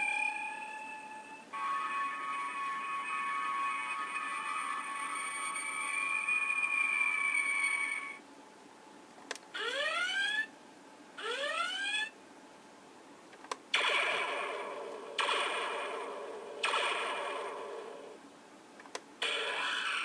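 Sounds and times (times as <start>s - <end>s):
dense electronic sound effect: 13.8s - 18.2s.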